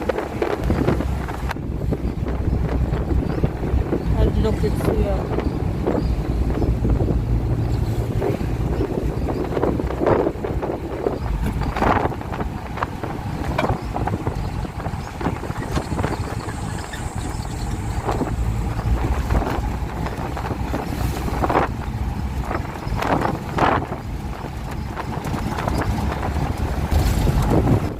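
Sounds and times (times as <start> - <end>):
vehicle low rumble: 0.0 - 27.9
wind buffeting microphone: 0.0 - 27.9
knocks and rattles: 11.0 - 27.9.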